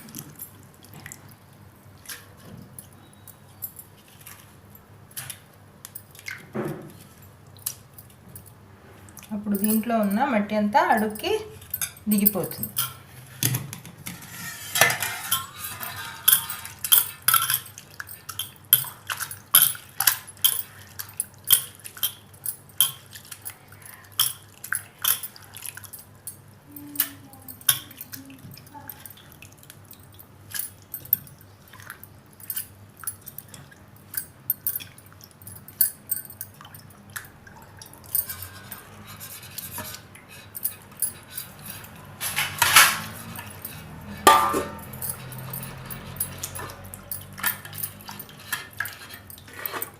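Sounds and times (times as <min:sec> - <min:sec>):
water splashing and dripping: 0:00.0 - 0:03.0, 0:05.2 - 0:10.2, 0:26.9 - 0:39.1, 0:42.4 - 0:49.4
dishes clinking: 0:10.9 - 0:23.4, 0:38.0 - 0:49.9.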